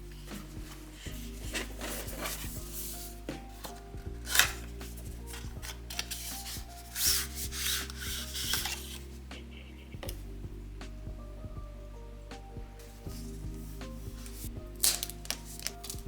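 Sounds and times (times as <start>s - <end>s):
soft background music: 0.0s - 16.0s
packaging rubbing and swishing: 0.2s - 9.2s, 13.2s - 16.0s.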